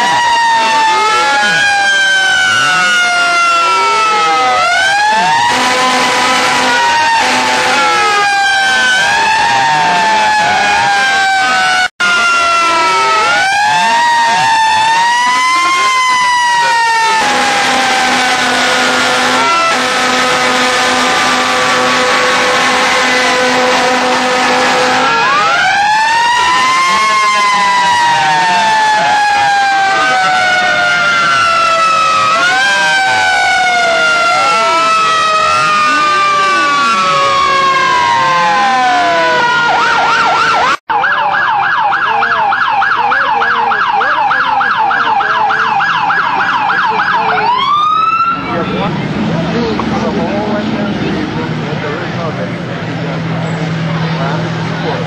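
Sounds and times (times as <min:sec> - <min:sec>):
pulsing horn: 0:00.0 - 0:40.8
steady horn tones: 0:00.0 - 0:40.8
siren winding up: 0:00.0 - 0:48.9
siren winding down: 0:00.0 - 0:55.0.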